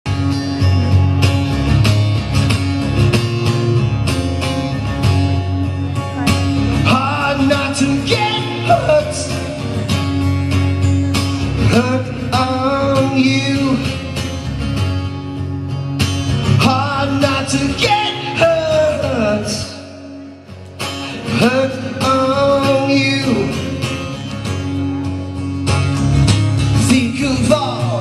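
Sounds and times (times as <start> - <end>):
guitar strummed: 0.1 - 28.0
man singing: 6.5 - 14.5, 16.4 - 24.8, 26.6 - 28.0.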